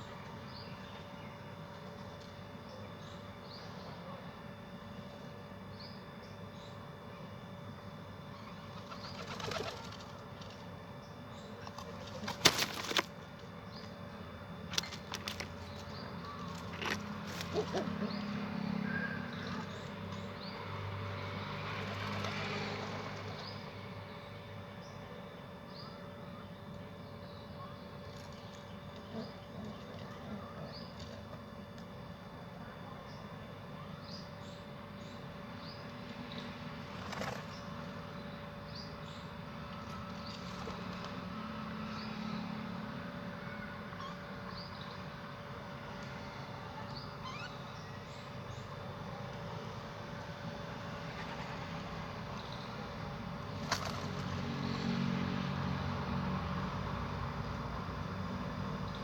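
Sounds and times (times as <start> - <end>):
small birds chirping: 0.0 - 4.0, 14.8 - 21.3, 25.7 - 31.4, 33.0 - 41.2, 43.5 - 45.4, 46.7 - 49.0.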